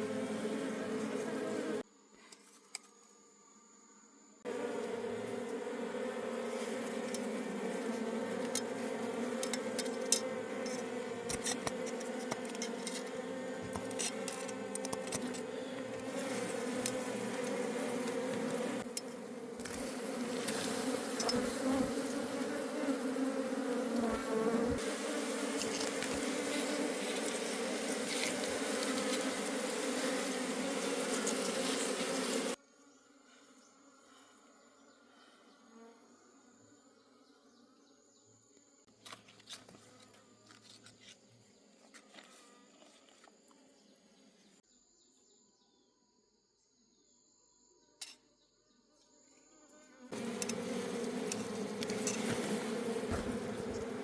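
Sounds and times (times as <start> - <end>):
honey bees buzzing: 0.0 - 1.8, 4.4 - 38.2, 49.8 - 54.0.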